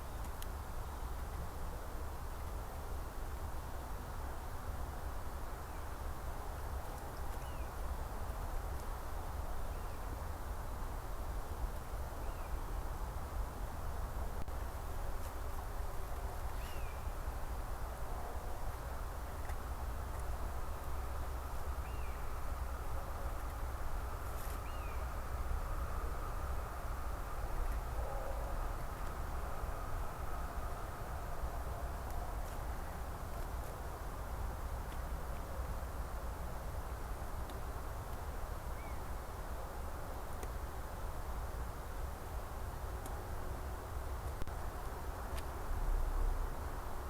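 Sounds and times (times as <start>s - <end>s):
faint bird chirps: 24.6s - 25.2s.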